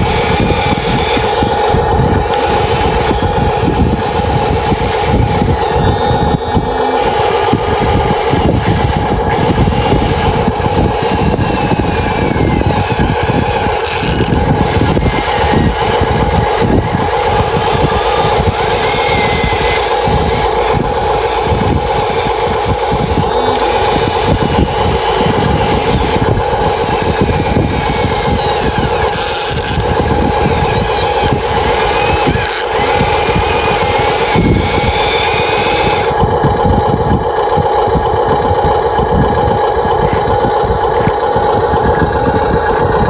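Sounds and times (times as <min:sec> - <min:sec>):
excavator mechanical whine: 0:00.0 - 0:43.0.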